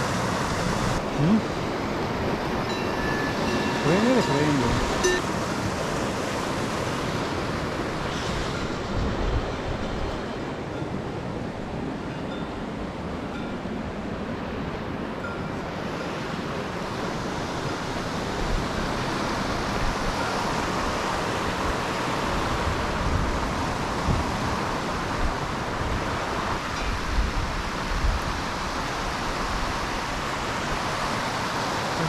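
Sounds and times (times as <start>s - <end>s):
wind buffeting microphone: 0.0s - 12.0s
mountain stream rushing: 0.0s - 32.0s.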